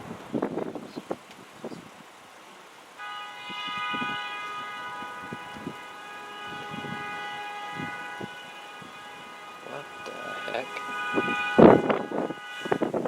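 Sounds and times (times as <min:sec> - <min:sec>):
faint background noise: 0:00.0 - 0:13.0
locomotive air horn chord: 0:03.0 - 0:13.0.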